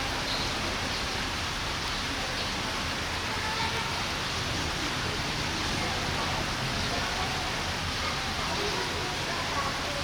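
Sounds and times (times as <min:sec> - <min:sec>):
crowd hubbub: 0:00.0 - 0:00.6.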